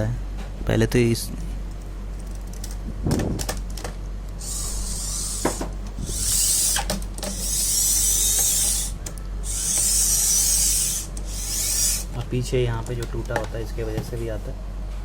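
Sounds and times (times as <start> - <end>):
high scraping and rubbing: 4.4 - 12.1.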